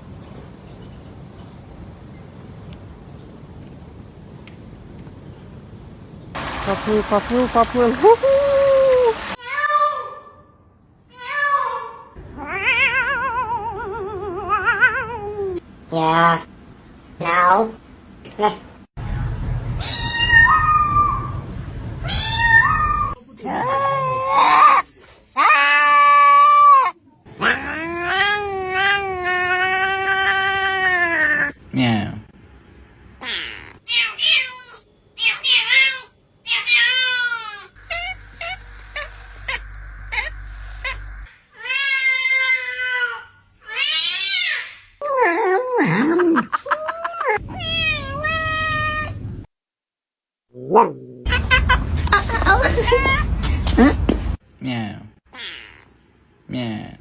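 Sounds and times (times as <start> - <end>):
cat yowling: 19.8 - 21.4, 22.0 - 24.8, 33.3 - 44.8, 46.8 - 49.2
cat chirping: 33.8 - 41.3.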